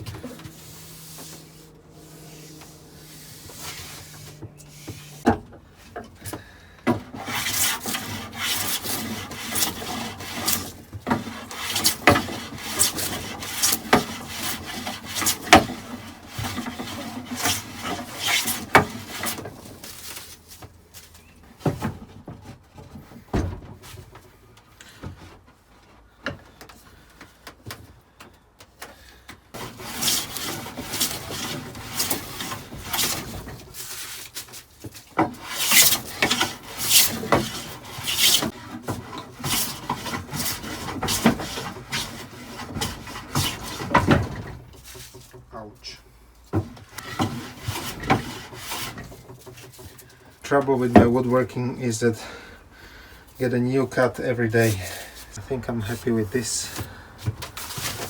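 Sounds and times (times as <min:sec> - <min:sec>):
hand plane shaving wood: 0:00.0 - 0:20.6, 0:29.6 - 0:45.7, 0:46.7 - 0:52.4.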